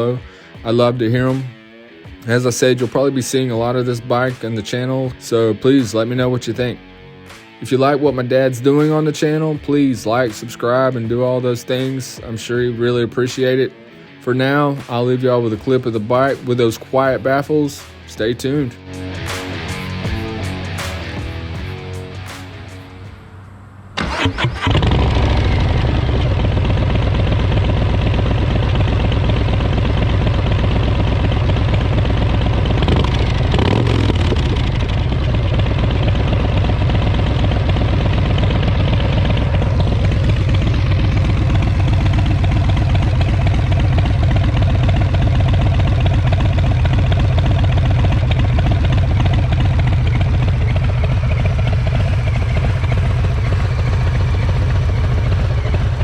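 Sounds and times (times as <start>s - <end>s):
motorcycle engine running: 18.5s - 23.4s, 24.0s - 56.0s.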